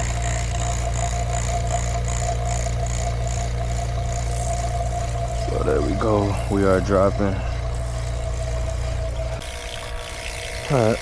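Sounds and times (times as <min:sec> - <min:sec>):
faint high pulse: 0:00.0 - 0:11.0
vacuum pump humming: 0:00.0 - 0:11.0.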